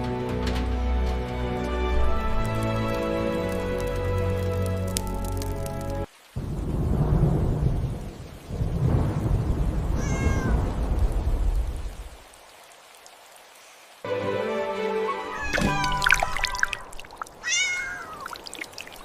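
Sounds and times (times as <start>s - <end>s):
music: 0.0s - 6.1s, 14.1s - 16.3s
patter of rain: 0.0s - 19.0s
rolls of thunder: 6.4s - 12.2s
cat meowing: 10.0s - 10.7s, 15.1s - 18.4s.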